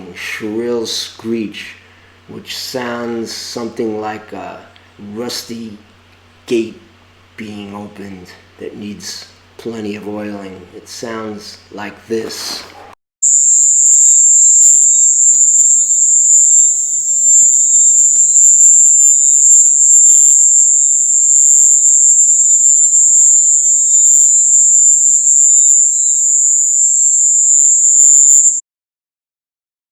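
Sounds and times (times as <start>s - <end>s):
tree frog screeching: 13.2s - 28.6s.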